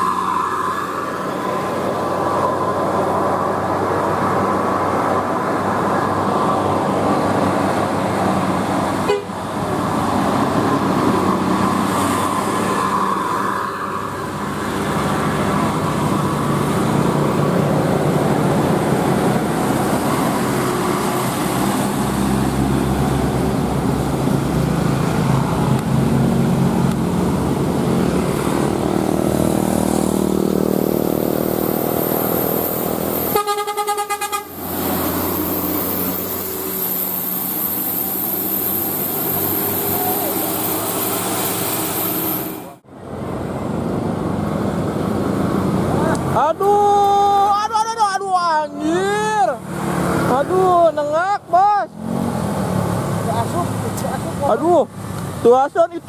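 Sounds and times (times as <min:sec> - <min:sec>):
buses running: 0:00.0 - 0:56.0
musical bus air horns: 0:09.0 - 0:09.4, 0:33.3 - 0:34.6.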